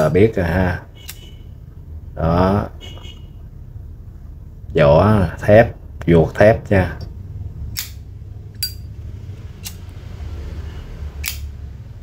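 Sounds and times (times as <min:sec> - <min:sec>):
lighter metallic clicks: 0:11.2 - 0:11.5.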